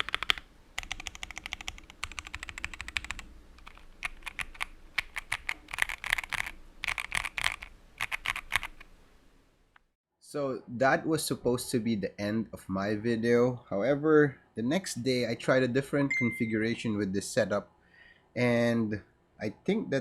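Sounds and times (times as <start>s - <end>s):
mechanical keyboard typing: 0.0s - 8.9s.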